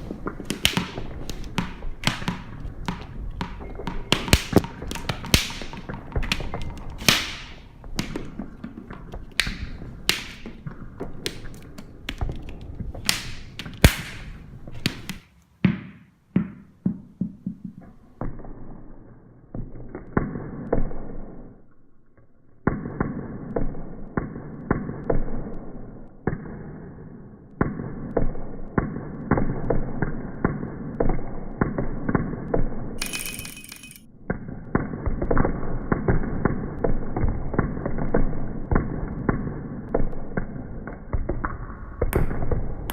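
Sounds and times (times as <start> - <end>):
percussive knocks and clatter: 0.0 - 18.6.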